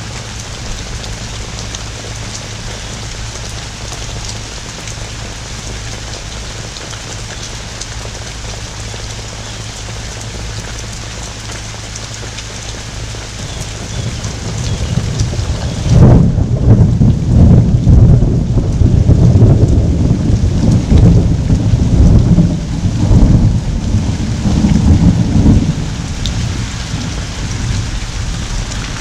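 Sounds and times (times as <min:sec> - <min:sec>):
heavy rain pouring: 0:00.0 - 0:29.0
raindrops tapping close by: 0:00.0 - 0:29.0
low rumble of thunder: 0:13.0 - 0:29.0.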